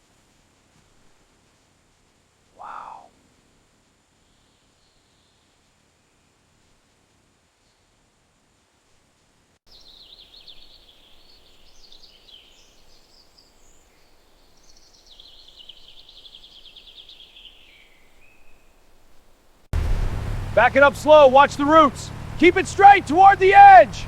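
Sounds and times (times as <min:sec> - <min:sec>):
faint outdoor hiss: 0:00.0 - 0:24.0
songbird trilling and warbling: 0:09.7 - 0:18.8.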